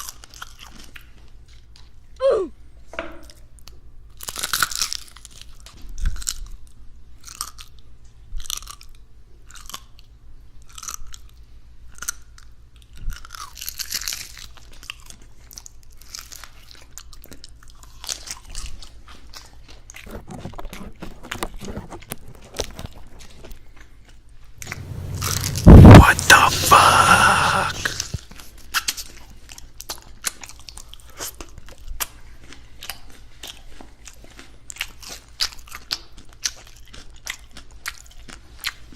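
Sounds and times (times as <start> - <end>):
crunching and chewing food: 0.0 - 2.0, 4.1 - 24.3, 29.5 - 38.9
faint low hum: 24.6 - 28.2.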